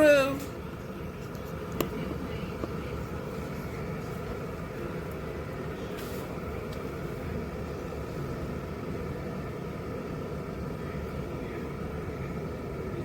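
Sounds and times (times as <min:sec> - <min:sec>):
electric kettle heating water: 0:00.0 - 0:13.0.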